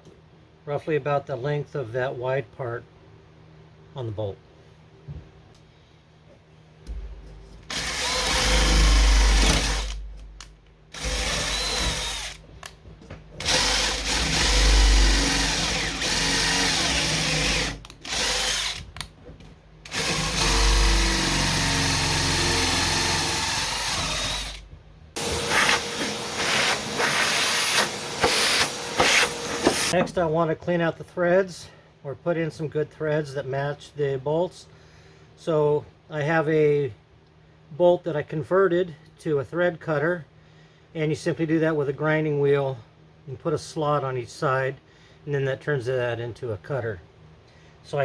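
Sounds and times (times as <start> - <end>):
electric drill boring into wood: 7.7 - 10.0, 10.9 - 12.4, 13.4 - 18.9, 19.9 - 24.6, 25.2 - 29.9.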